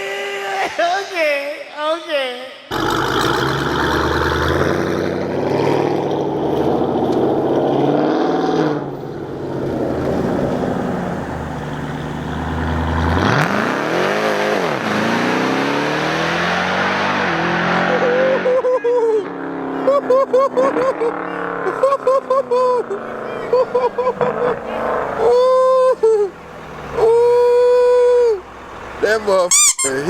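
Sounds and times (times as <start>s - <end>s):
engine accelerating hard: 2.7s - 30.0s.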